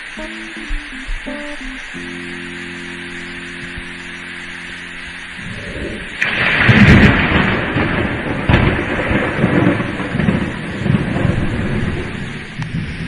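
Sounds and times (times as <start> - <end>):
heavy rain: 0.0 - 13.0
thunder rumbling and cracking: 5.4 - 13.0.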